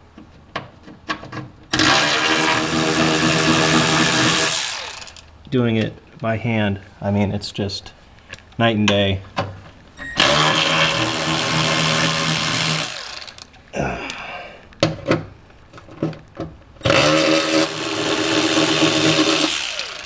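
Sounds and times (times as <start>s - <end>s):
cordless ratchet spinning bolts: 3.3s - 5.3s, 10.2s - 13.5s.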